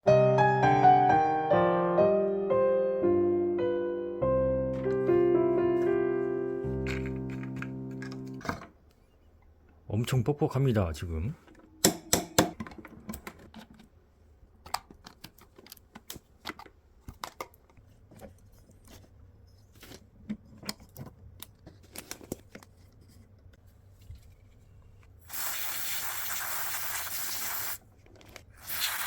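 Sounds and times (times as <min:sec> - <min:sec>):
aerosol spray hissing: 0:25.2 - 0:27.8, 0:28.6 - 0:29.0.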